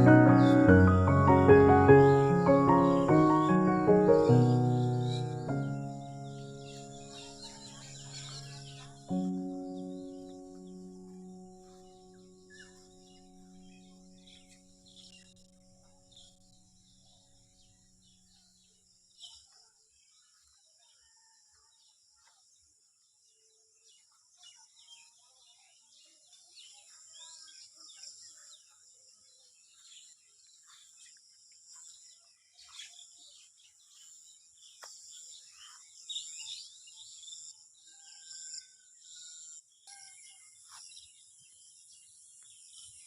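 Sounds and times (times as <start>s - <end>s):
birds chirping and calling: 0.0s - 16.4s.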